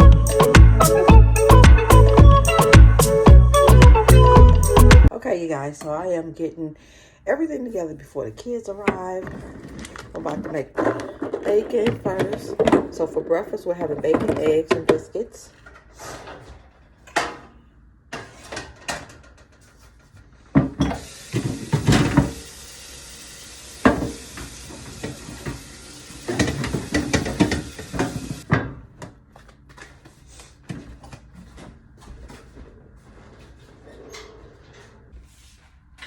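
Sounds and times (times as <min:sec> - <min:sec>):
pans and dishes clattering: 0:20.6 - 0:22.4, 0:26.2 - 0:28.8.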